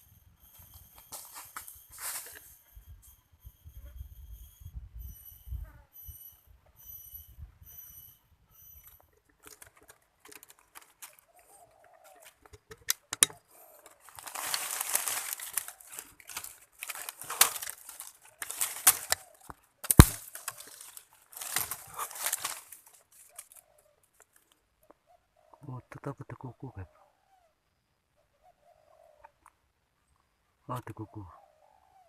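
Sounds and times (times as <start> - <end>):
footsteps crunching dry leaves: 0.7 - 2.6, 14.0 - 23.6
sharp crack: 19.8 - 20.8.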